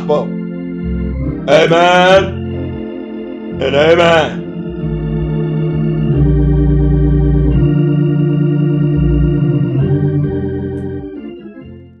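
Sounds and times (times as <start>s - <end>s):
organ sustained chords: 0.0s - 12.0s.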